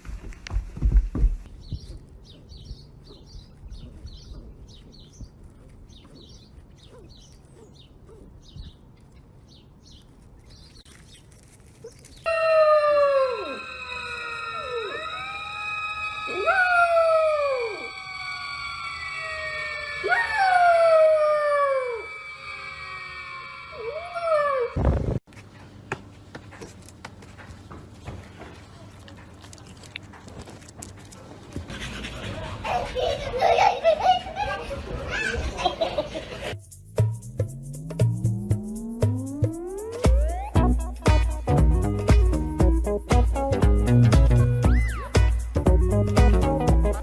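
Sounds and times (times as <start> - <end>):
dogs howling: 12.3 - 22.2
steady high tones: 13.0 - 20.4, 21.6 - 24.2.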